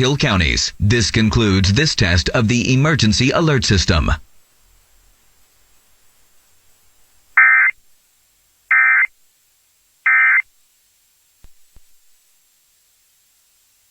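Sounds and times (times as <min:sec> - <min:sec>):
buzzy digital data tones: 0:07.4 - 0:07.8, 0:08.7 - 0:09.1, 0:10.0 - 0:10.5.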